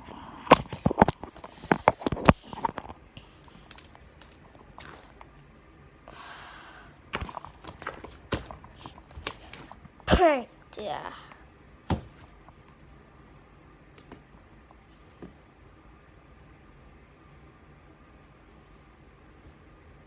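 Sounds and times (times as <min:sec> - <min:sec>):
slime squishing by hand: 0:07.0 - 0:10.0.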